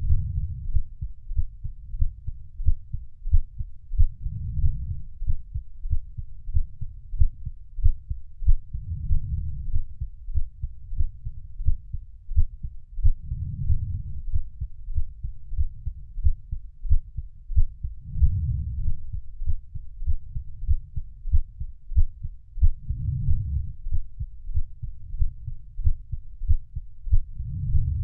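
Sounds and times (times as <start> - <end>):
low whooshing: 0.0 - 1.1, 4.0 - 5.3, 8.7 - 11.2, 13.1 - 14.7, 17.6 - 21.1, 22.6 - 25.9, 27.1 - 28.0
heartbeat thumps: 0.0 - 28.0.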